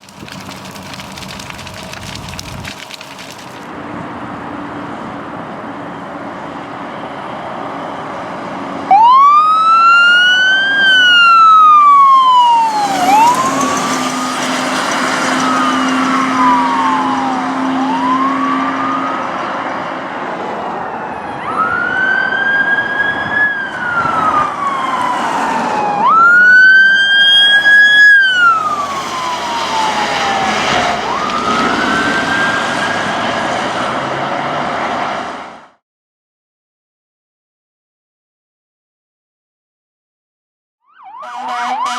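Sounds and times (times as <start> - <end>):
passing trucks: 0.2 - 35.8, 41.2 - 41.9
electronic sirens wailing: 8.9 - 33.6, 40.9 - 41.9.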